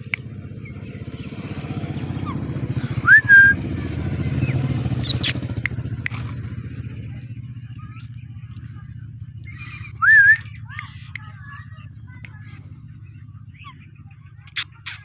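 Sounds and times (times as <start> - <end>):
passing vehicle engine rumble: 0.0 - 15.0
parrot rising whistle: 3.0 - 3.6, 5.0 - 5.4
parrot sharp chirps: 4.4 - 6.3, 14.5 - 15.0.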